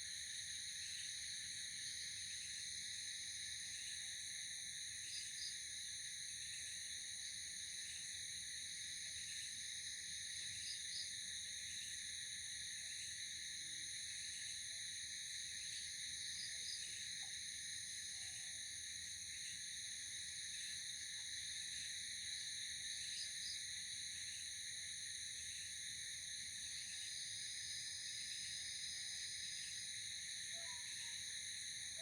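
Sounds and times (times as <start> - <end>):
crickets trilling: 22.8 - 32.0.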